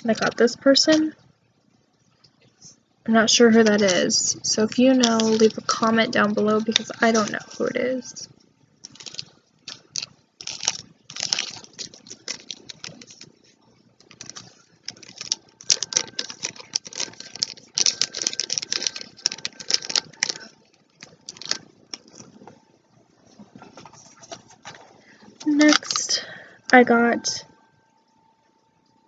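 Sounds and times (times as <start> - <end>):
plastic packaging crinkling: 0.0 - 0.5, 3.5 - 8.2, 8.8 - 22.6, 23.6 - 26.2.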